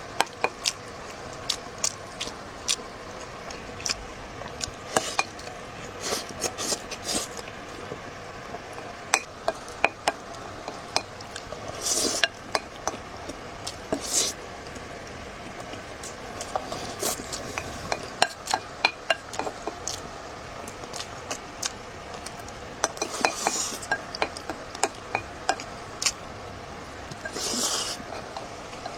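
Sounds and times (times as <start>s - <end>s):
slurping food: 4.6s - 7.4s, 11.7s - 12.3s, 13.9s - 14.4s, 16.4s - 17.9s, 23.0s - 23.9s, 27.2s - 28.3s.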